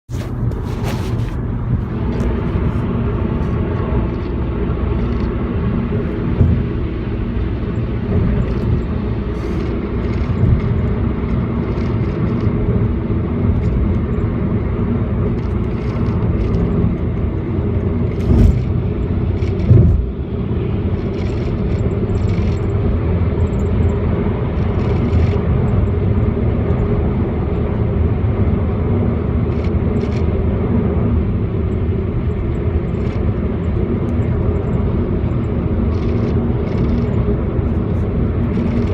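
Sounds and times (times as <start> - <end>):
car engine droning: 0.1 - 38.9
sharp engine knocks: 6.3 - 6.9, 18.1 - 20.2.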